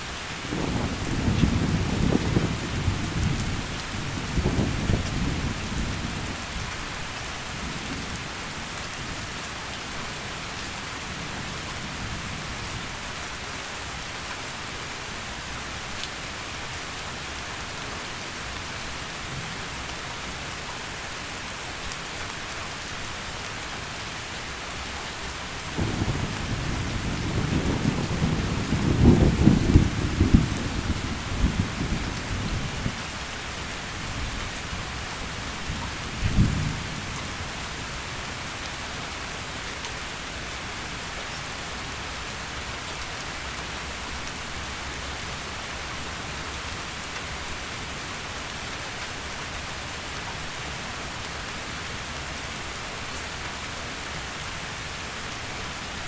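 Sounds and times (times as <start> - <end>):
heavy rain falling: 0.0 - 56.0
rolling thunder: 0.5 - 6.2, 25.8 - 33.0, 36.2 - 37.0.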